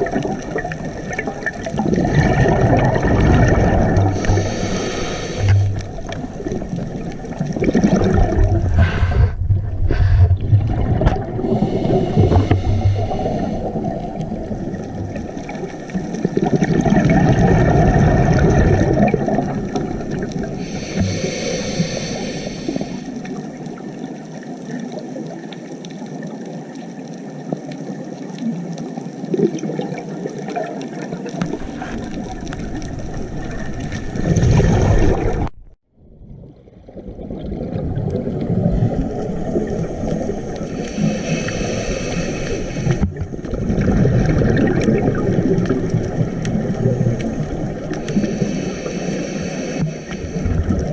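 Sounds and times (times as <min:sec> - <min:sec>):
exhaled bubbles rushing: 0:00.0 - 0:24.0, 0:29.2 - 0:50.9
diver breathing through regulator: 0:03.9 - 0:06.2, 0:08.6 - 0:14.5, 0:20.5 - 0:23.4, 0:40.3 - 0:43.1, 0:47.4 - 0:50.9.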